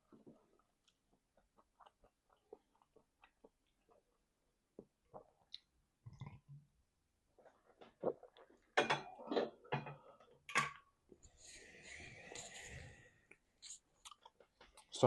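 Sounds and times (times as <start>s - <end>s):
close chewing and mouth clicks: 0.0s - 6.3s, 12.3s - 15.0s.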